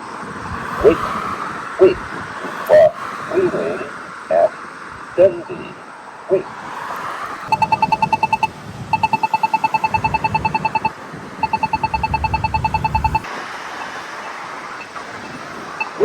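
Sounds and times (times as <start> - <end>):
rapid pedestrian signal ticking: 0.7 - 1.1, 1.8 - 16.0.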